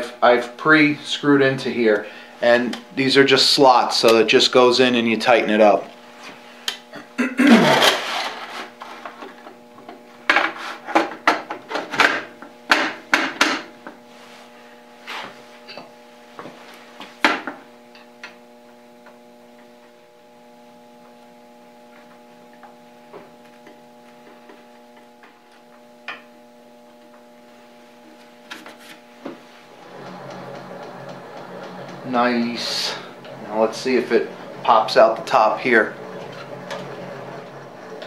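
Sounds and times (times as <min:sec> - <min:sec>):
faint steady hum: 0:00.0 - 0:38.0.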